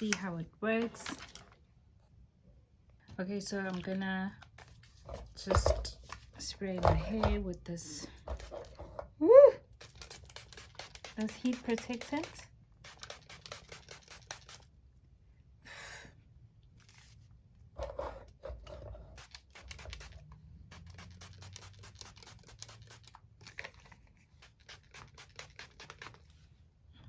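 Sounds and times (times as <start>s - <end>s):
spray bottle misting: 9.8s - 14.7s, 19.2s - 23.2s, 24.2s - 26.3s.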